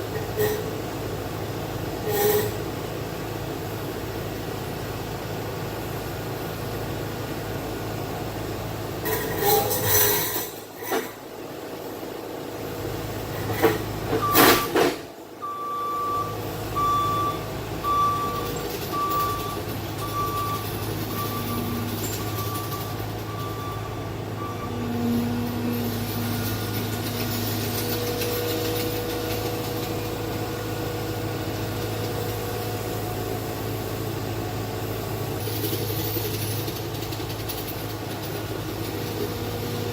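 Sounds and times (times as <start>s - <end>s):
backup alarm beeping: 15.4s - 25.0s
machine engine running: 18.4s - 34.4s.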